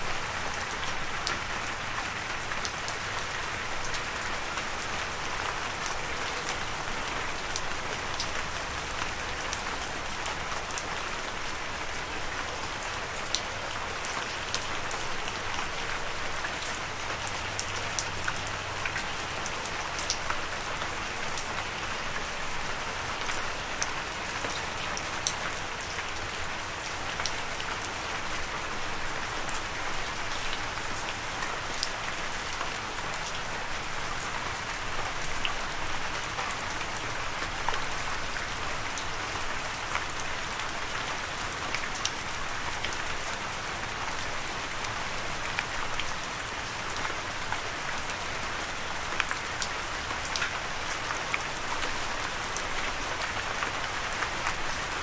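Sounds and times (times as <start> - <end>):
raindrops pattering: 0.0 - 55.0
steady rain falling: 0.0 - 55.0.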